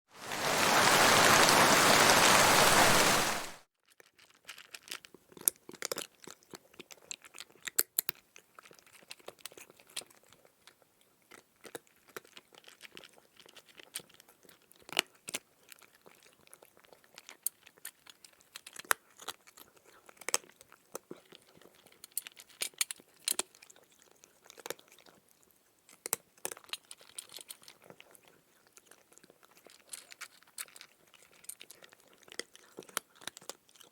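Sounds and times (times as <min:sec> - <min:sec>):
burst of even noise: 0:00.2 - 0:03.6
cat chewing and crunching: 0:03.8 - 0:33.9.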